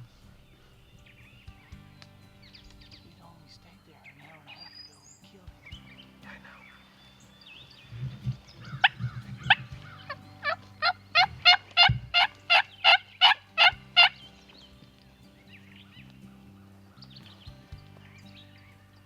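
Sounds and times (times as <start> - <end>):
wild turkey yelping: 8.0 - 14.2.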